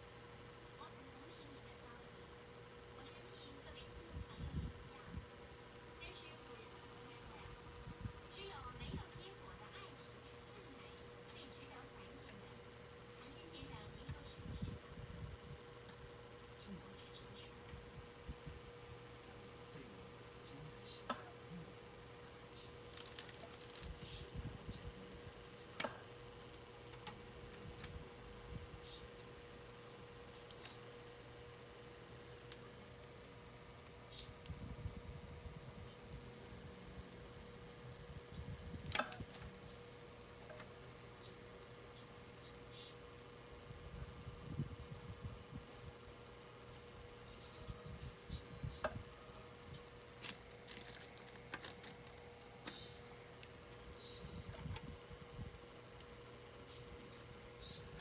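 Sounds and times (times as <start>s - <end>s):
steady low hum: 0.0s - 58.0s
faint clicks and handling noises: 22.0s - 31.1s, 31.8s - 34.6s, 38.3s - 43.3s, 47.2s - 54.9s.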